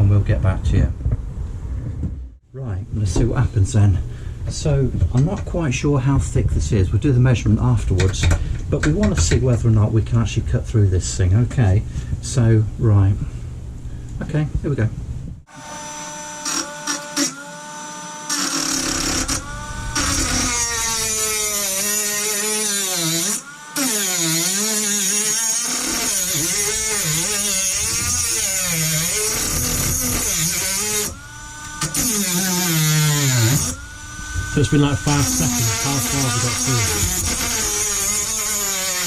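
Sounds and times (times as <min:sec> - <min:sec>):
rotary tool grinding into steel: 0:15.5 - 0:39.0.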